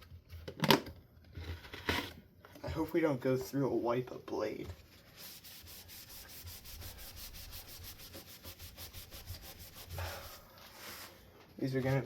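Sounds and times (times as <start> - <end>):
wipe rubbing on fan blade: 5.0 - 11.1.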